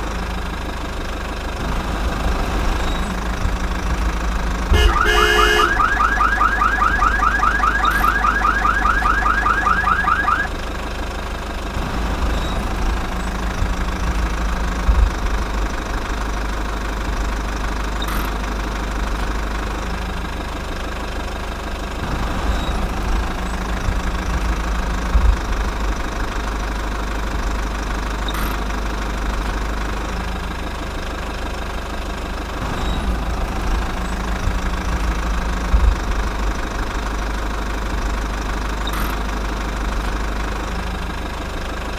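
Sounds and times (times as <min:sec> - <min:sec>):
electronic rising chirps: 0:04.9 - 0:10.5.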